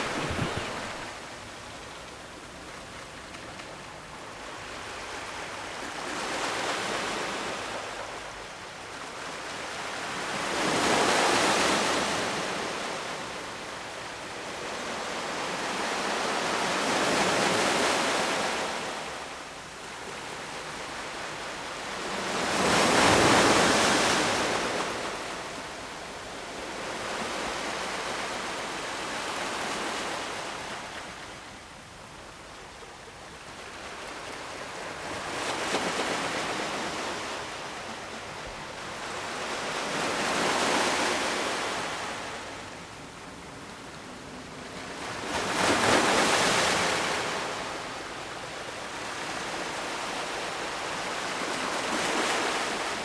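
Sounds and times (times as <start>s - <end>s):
ocean waves breaking: 0.0s - 1.3s.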